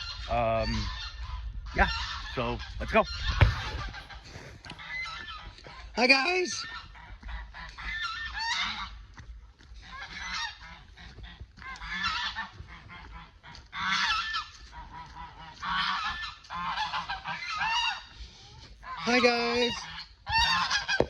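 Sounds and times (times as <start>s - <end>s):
geese honking: 0.0s - 9.0s, 9.8s - 18.2s, 18.8s - 21.0s.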